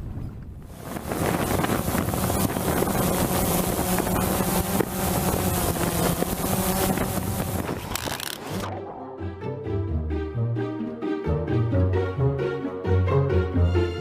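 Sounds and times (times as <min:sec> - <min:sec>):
wind buffeting microphone: 0:00.0 - 0:08.0
boat motor running: 0:00.7 - 0:08.9.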